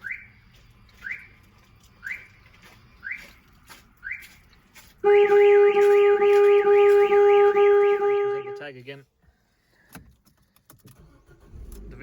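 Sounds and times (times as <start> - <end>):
car alarm rising chirp: 0.0 - 4.5
car horn sounding steadily: 5.0 - 8.9.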